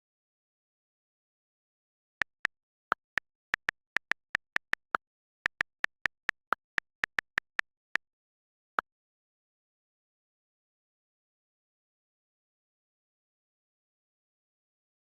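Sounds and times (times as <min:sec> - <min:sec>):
short high clicks: 0:02.2 - 0:08.0.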